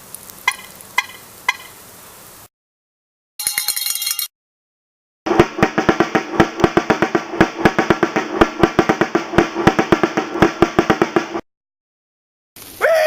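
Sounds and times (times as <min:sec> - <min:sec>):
fast drumming: 0:05.3 - 0:11.4.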